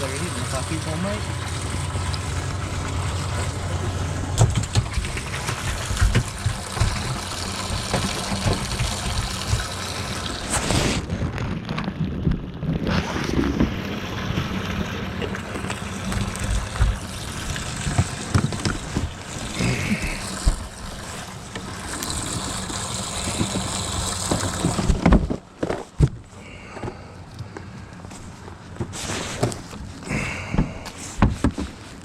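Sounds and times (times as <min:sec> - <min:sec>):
boat engine hum: 0:00.0 - 0:11.1, 0:13.0 - 0:25.6, 0:26.2 - 0:32.0
knocks and clatter: 0:04.3 - 0:09.9.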